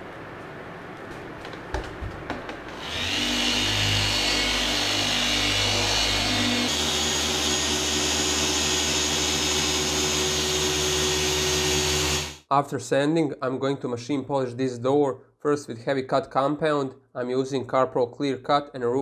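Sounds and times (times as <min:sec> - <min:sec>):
electric polisher motor whine: 0:02.7 - 0:12.4.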